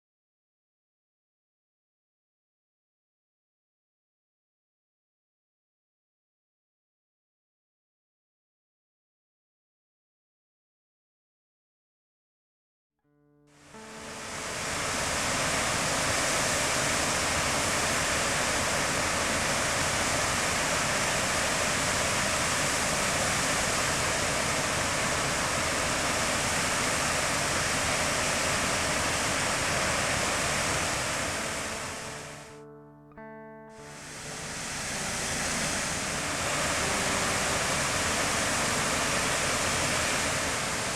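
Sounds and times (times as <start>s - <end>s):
waterfall rushing: 13.7s - 32.6s, 33.8s - 40.9s.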